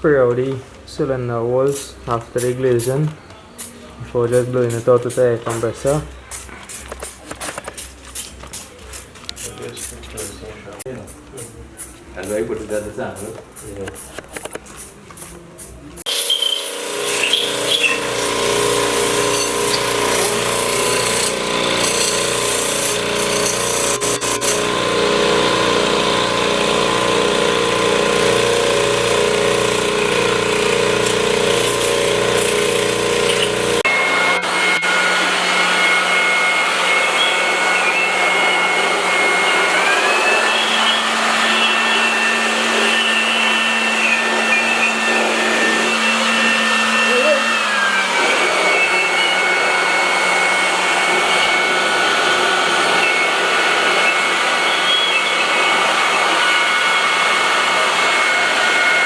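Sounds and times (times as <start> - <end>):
whistling air hiss: 16.1 - 18.0, 33.9 - 45.8, 48.4 - 59.0.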